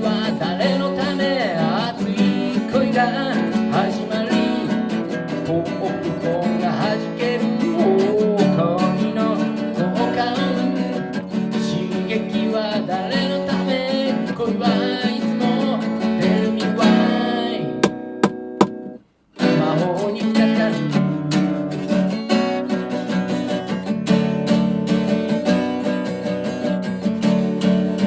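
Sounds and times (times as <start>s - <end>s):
pop song with acoustic guitar: 0.0s - 28.0s.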